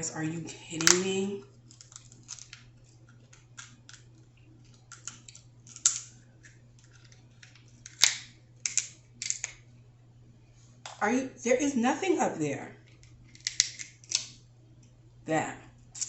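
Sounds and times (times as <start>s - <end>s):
shellfish shell cracking: 1.6s - 9.6s, 12.8s - 14.4s.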